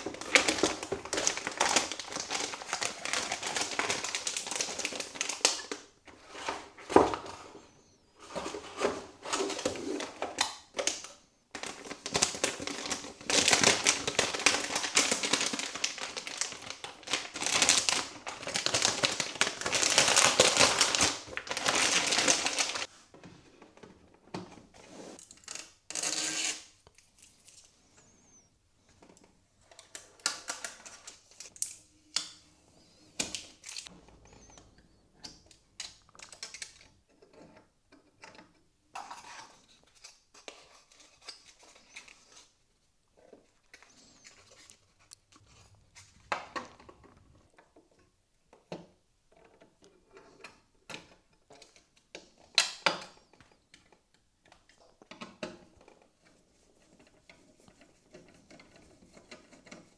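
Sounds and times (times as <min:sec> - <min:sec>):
small plastic parts clicking and rattling: 0:33.2 - 0:42.5, 0:46.3 - 0:59.9.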